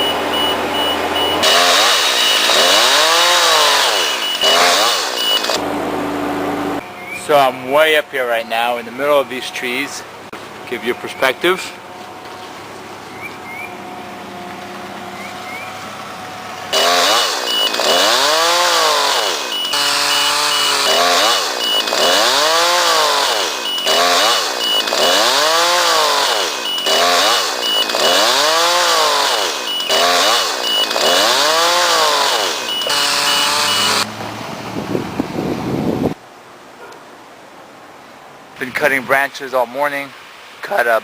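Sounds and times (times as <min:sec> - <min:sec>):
chainsaw revving: 0:00.0 - 0:05.7, 0:16.7 - 0:34.2
low steady engine hum: 0:08.8 - 0:16.8.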